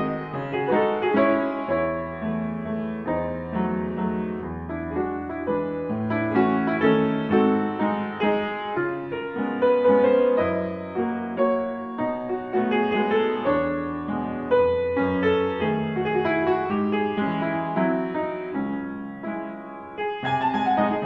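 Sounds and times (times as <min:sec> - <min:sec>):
slow gentle piano music: 0:00.0 - 0:21.0.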